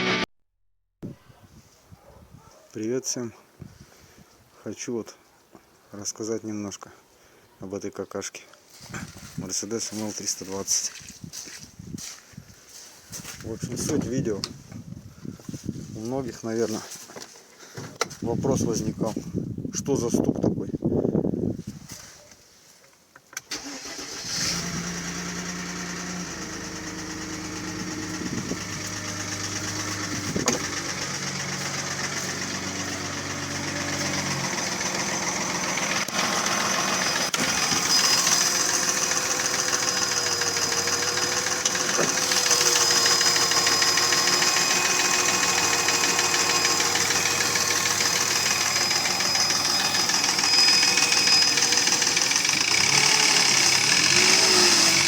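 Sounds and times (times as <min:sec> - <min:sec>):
car engine idling with knock: 0:25.6 - 0:55.0.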